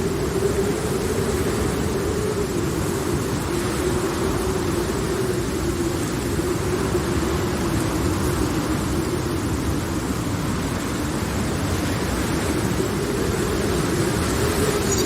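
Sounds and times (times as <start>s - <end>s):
steady rain: 0.0s - 15.0s
storm rumble: 0.0s - 15.0s
wavering hum: 12.2s - 15.0s.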